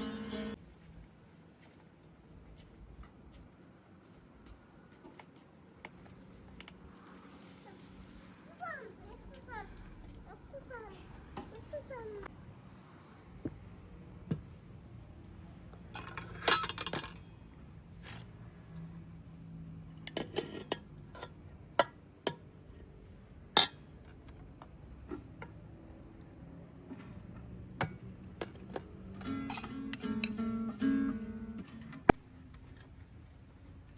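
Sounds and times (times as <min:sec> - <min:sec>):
dishes and utensils clinking: 0:16.0 - 0:17.4, 0:23.6 - 0:24.0, 0:28.4 - 0:30.7.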